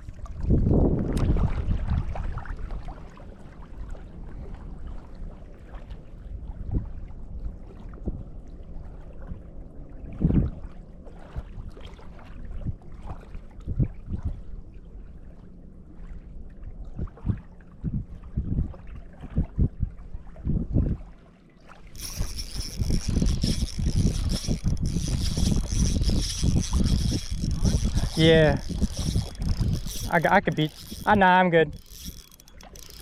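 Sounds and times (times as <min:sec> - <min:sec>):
wind buffeting microphone: 0:00.0 - 0:03.0, 0:16.8 - 0:21.1, 0:22.0 - 0:33.0.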